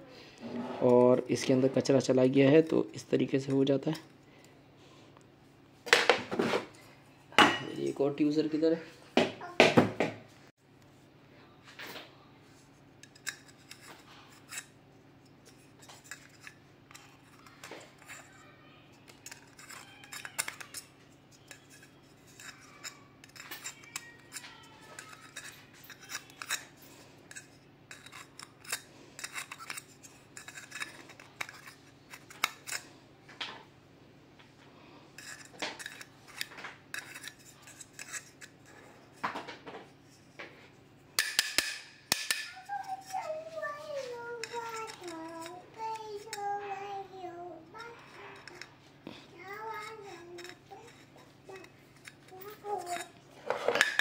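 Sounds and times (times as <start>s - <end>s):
metal tools clicking and scraping: 0.8s - 4.2s, 13.0s - 33.6s, 35.1s - 40.4s, 41.2s - 54.0s.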